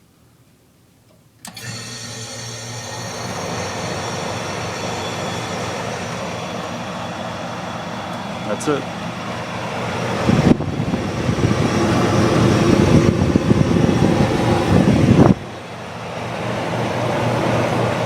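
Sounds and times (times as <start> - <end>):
dehumidifier humming: 1.0 - 18.0
rough rushing noise: 9.3 - 16.2.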